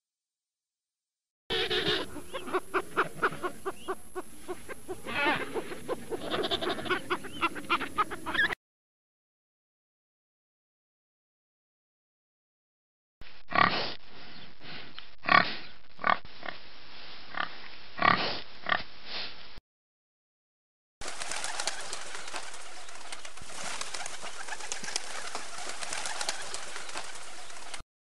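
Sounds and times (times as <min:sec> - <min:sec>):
birds calling: 0:01.5 - 0:08.6, 0:21.1 - 0:27.8
chatter of many birds: 0:01.5 - 0:08.6, 0:21.1 - 0:27.8.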